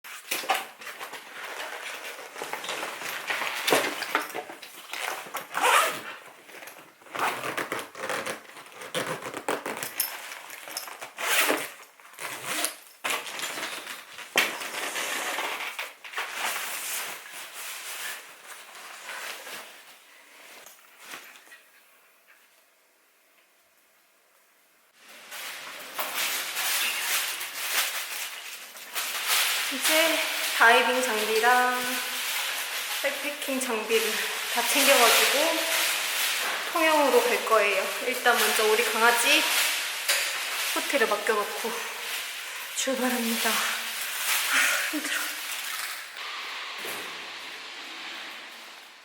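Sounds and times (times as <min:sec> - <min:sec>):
gear rustling and clattering: 0:00.1 - 0:19.7, 0:25.3 - 0:46.2
zipper strokes: 0:05.5 - 0:06.2.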